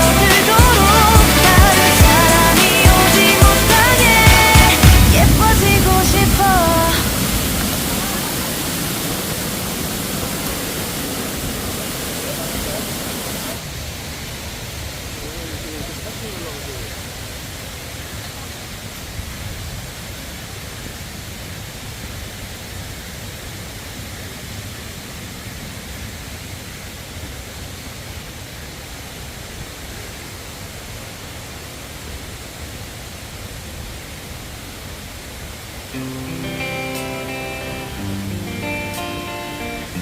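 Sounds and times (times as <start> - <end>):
steady rushing noise: 0.0 - 17.7.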